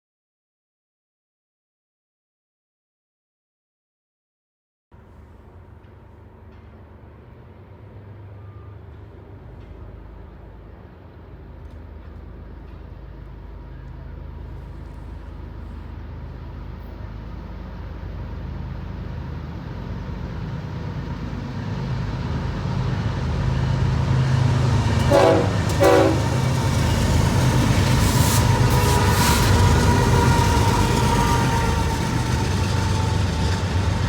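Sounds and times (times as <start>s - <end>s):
train rumble: 5.0s - 34.0s
train horn toots: 24.8s - 33.4s
steady horn-like tone: 25.0s - 27.0s.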